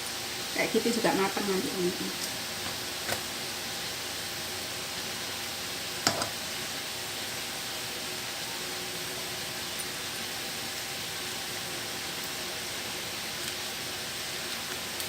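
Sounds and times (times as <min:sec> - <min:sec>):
kitchen background hiss: 0:00.0 - 0:15.0.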